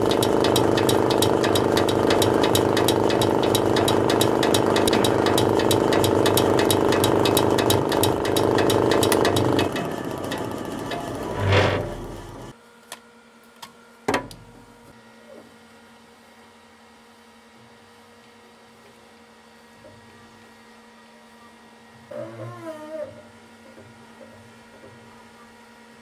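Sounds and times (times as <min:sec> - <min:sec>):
forage cutter ticking rattle: 0:00.0 - 0:11.3
sharp clicks: 0:00.0 - 0:11.3
electric motor hum: 0:00.0 - 0:12.5.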